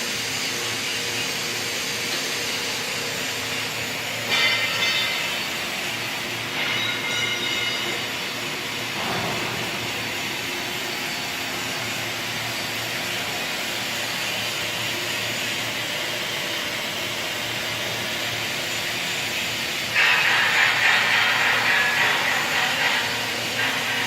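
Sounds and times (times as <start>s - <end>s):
workshop machine hiss: 0.0s - 24.0s
welding arc hissing: 17.0s - 24.0s.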